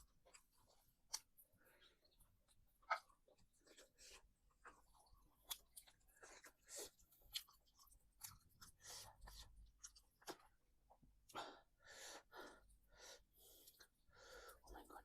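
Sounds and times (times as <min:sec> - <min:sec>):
person chewing food: 0:00.0 - 0:11.4.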